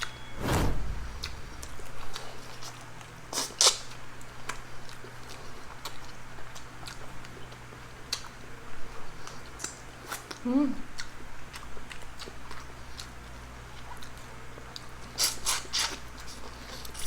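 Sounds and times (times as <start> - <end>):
low thump: 0.4 - 2.6.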